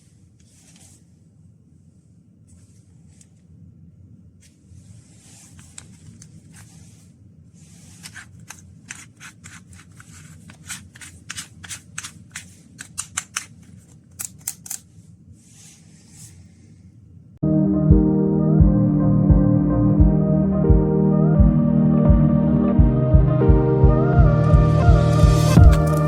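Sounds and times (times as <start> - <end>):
low hum: 17.4 - 26.0.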